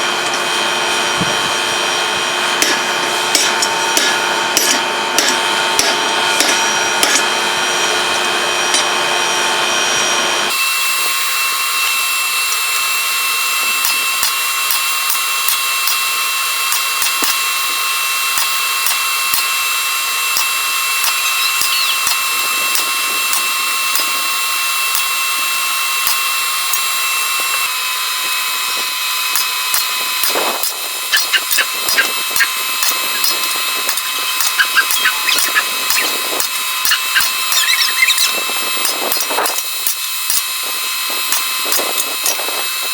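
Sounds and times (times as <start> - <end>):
power grinder whining: 0.0 - 42.9
hammer blows on hot steel: 29.3 - 40.5.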